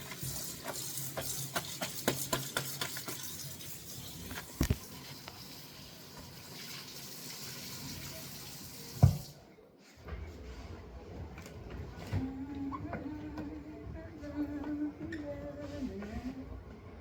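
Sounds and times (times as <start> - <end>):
rag rinsed by hand splashing: 0.0 - 4.8
tap water running into sink: 0.0 - 9.4.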